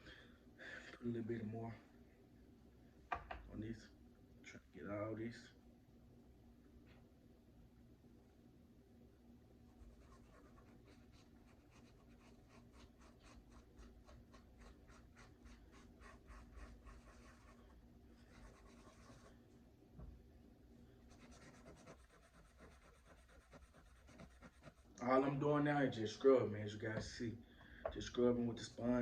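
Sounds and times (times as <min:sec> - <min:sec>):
sponge scrubbing metal: 0:21.2 - 0:24.9.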